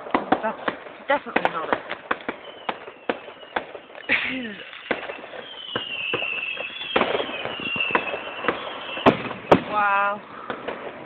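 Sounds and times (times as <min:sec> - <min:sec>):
fireworks bangs and cracks: 0:00.0 - 0:11.0
high thin whistle: 0:02.4 - 0:09.1.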